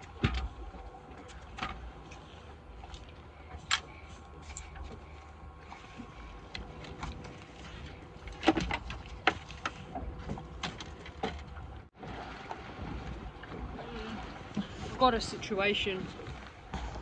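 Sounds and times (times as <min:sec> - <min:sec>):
fish and net knocking in boat: 0:00.0 - 0:00.6, 0:08.3 - 0:13.8
low wind rumble: 0:00.0 - 0:17.0.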